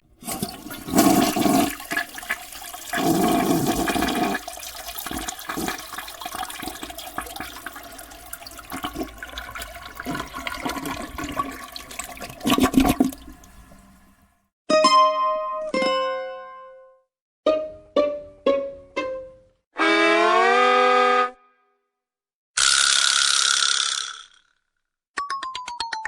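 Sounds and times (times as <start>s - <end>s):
toilet flushing: 0.0s - 14.5s.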